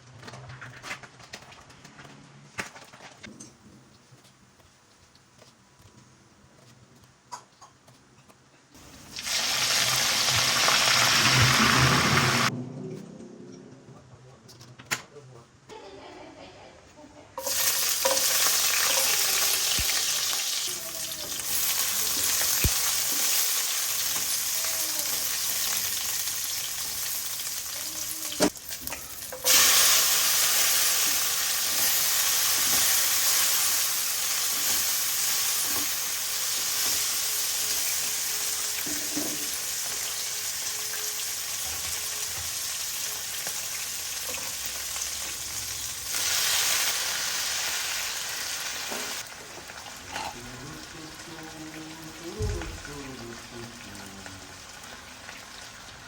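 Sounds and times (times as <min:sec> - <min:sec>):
hot oil sizzling in a frying pan: 0:08.8 - 0:12.5, 0:17.4 - 0:56.0.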